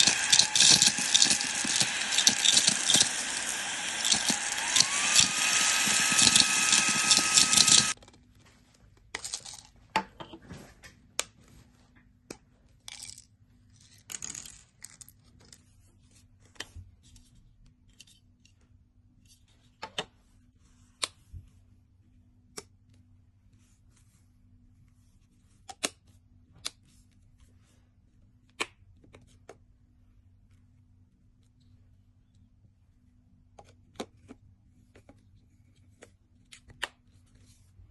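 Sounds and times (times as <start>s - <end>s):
vacuum cleaner running: 0.0s - 8.0s.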